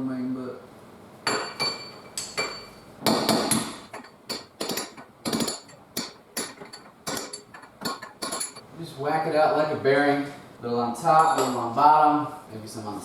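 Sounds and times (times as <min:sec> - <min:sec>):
hammer striking metal: 0:01.2 - 0:08.6.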